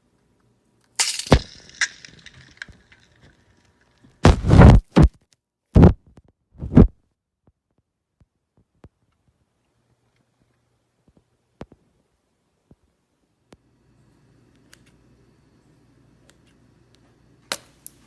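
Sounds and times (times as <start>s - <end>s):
crackly cut into stress ball: 4.2s - 5.2s.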